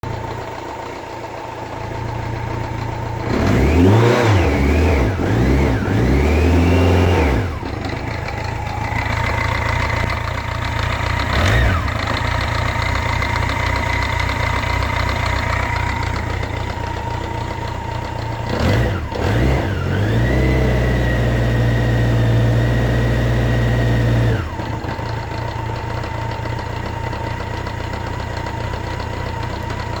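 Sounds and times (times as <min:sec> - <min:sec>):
car engine idling and revving: 0:00.0 - 0:30.0.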